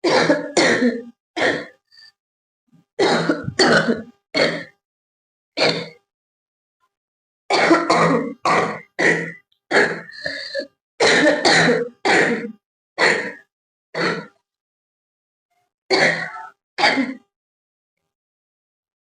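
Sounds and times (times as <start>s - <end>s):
woman coughing: 0.0s - 1.7s, 3.0s - 4.7s, 7.5s - 10.3s, 11.0s - 13.4s, 15.9s - 17.2s.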